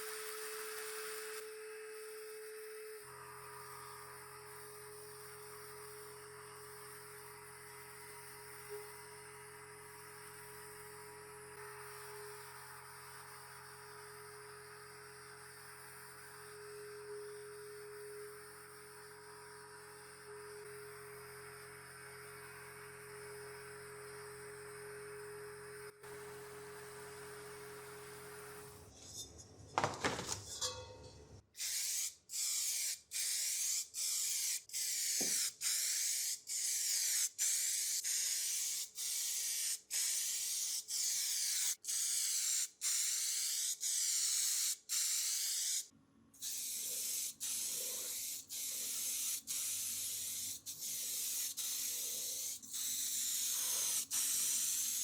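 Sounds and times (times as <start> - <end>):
spray hissing in bursts: 31.6 - 55.0.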